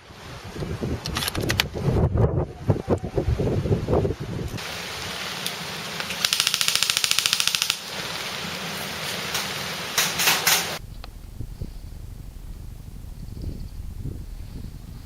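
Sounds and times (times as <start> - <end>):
airsoft rifle full-auto firing: 6.2 - 7.8.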